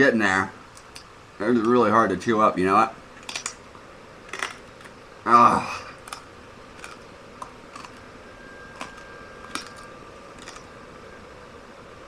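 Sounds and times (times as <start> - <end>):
glass crunching between teeth: 3.2 - 3.6, 4.3 - 4.9, 6.0 - 8.0, 8.7 - 10.7.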